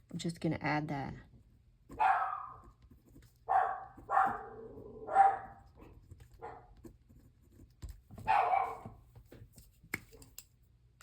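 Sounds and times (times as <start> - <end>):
dog barking: 1.9 - 2.7, 3.4 - 6.8, 8.2 - 9.0.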